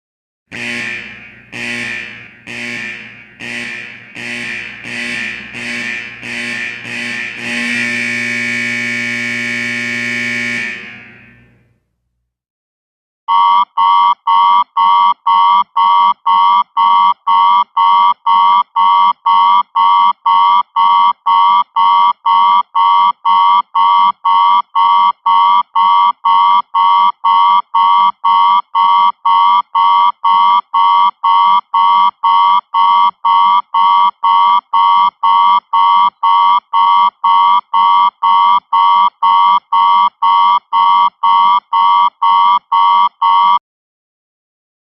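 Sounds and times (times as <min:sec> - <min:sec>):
ringing alarm: 0:00.5 - 0:11.4
electronic alarm beeping: 0:13.3 - 0:43.6.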